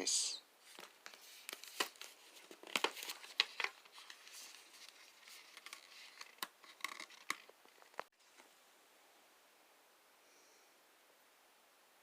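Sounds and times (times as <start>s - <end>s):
plastic packaging crinkling: 0.7s - 8.1s.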